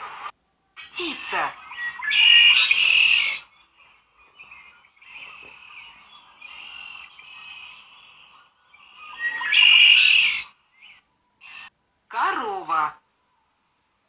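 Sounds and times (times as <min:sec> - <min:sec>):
bird calling and twittering: 0:00.8 - 0:11.7.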